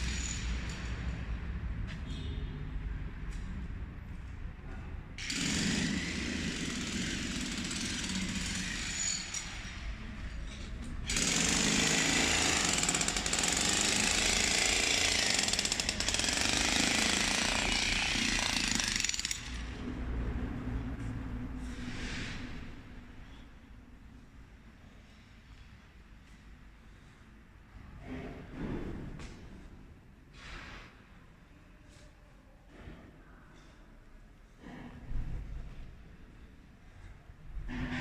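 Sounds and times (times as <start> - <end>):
jackhammer running: 5.2 - 9.8, 11.0 - 19.8.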